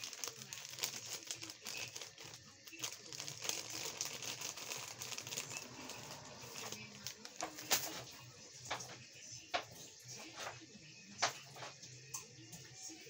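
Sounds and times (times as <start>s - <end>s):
plastic or paper crinkling: 0.0s - 8.9s.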